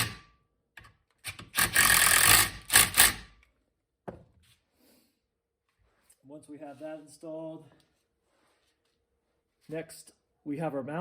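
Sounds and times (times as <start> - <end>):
torque wrench ratchet clicks: 1.6 - 3.2.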